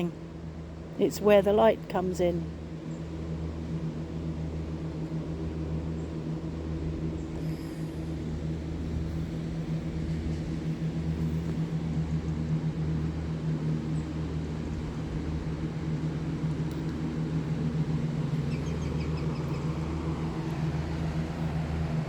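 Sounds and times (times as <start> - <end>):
bird chirping: 18.4 - 20.0.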